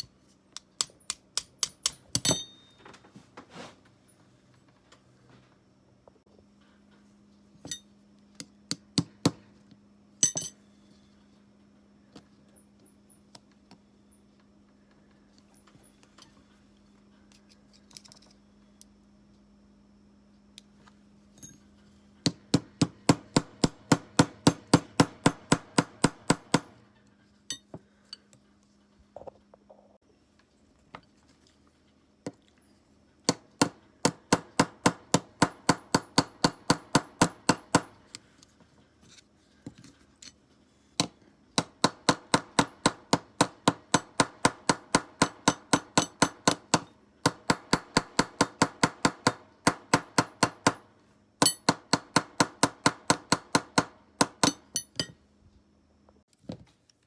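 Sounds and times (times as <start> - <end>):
small hammer tapping on metal: 0.0 - 2.6, 41.0 - 50.8, 51.4 - 55.2
steady low hum: 0.0 - 56.3.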